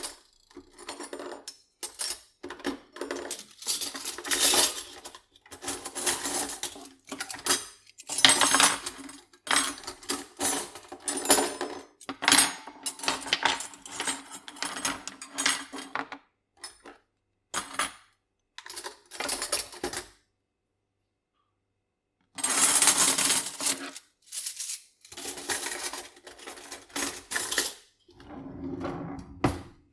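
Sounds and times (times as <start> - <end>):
metal cutlery clinking: 0.0 - 15.7, 22.5 - 27.8.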